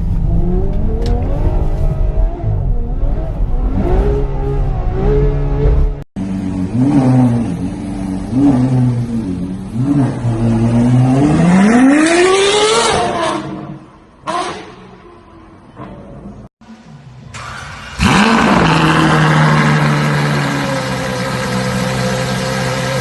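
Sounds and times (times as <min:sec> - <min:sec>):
car engine revving: 0:17.3 - 0:23.0.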